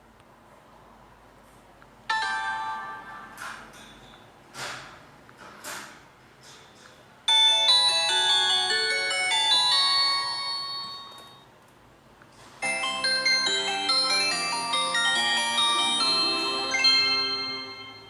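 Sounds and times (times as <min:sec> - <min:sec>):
chiming ringtone melody: 0:02.1 - 0:03.4, 0:07.3 - 0:11.5, 0:12.6 - 0:18.0.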